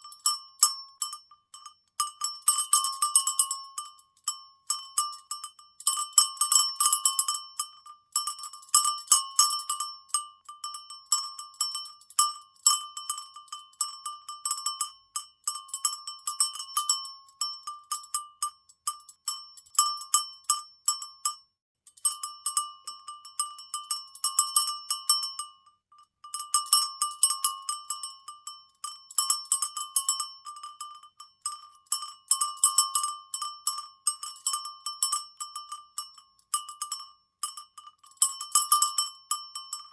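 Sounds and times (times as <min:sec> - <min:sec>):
cowbell clanking: 0:00.0 - 0:21.4, 0:22.0 - 0:39.9.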